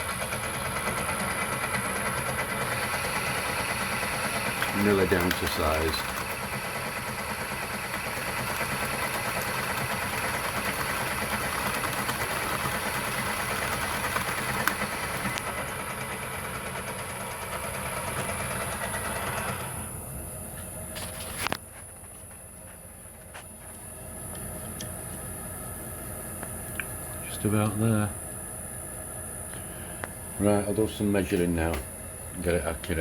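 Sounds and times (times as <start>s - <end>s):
lathe running: 0.0s - 21.6s.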